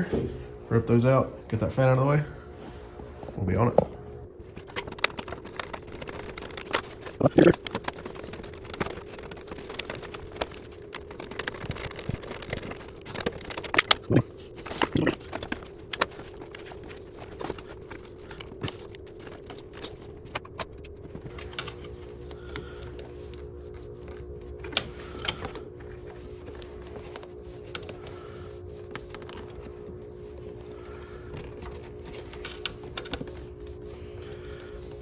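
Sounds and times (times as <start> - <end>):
steady low hum: 0.0 - 35.0.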